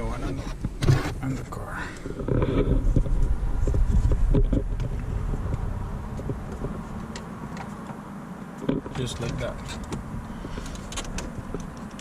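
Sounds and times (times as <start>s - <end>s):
low rumble: 1.2s - 7.6s.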